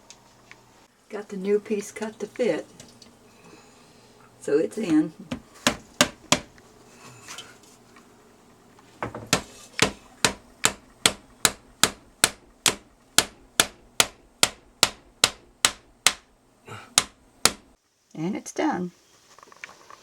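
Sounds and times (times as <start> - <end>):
hammer blows on wood: 5.3 - 6.6, 9.1 - 17.8.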